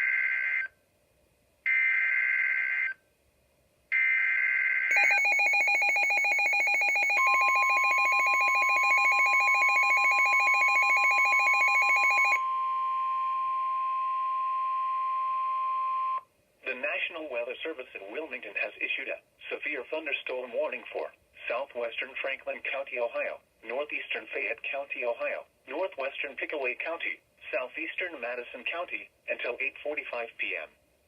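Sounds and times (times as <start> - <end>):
rapidly pulsing alert signal: 4.9 - 12.4
steady single-pitch tone: 4.9 - 16.2.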